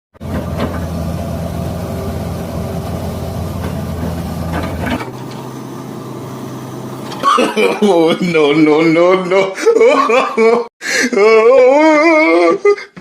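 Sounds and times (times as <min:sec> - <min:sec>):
excavator diesel engine running: 0:00.2 - 0:08.9.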